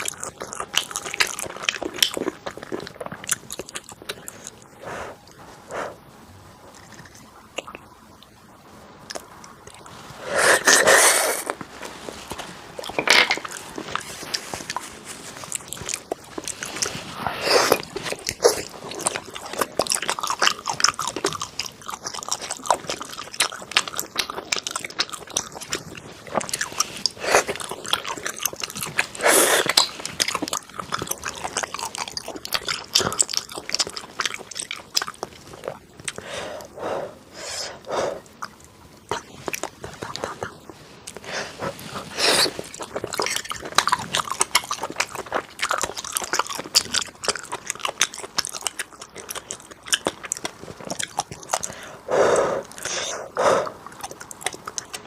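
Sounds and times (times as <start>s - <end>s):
person chewing food: 0.0s - 6.0s, 6.6s - 8.4s, 9.0s - 55.0s
wet mouth clicks: 37.6s - 55.0s.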